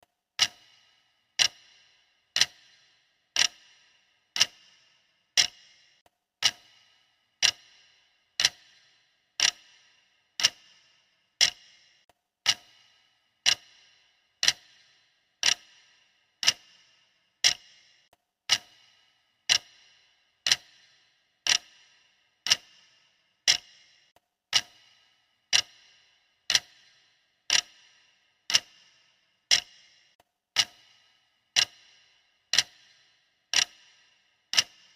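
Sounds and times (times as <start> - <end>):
clock ticking: 0.4 - 34.9.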